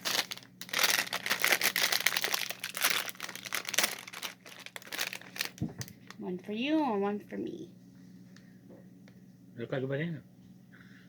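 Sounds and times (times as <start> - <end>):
plastic packaging crinkling: 0.0 - 6.2.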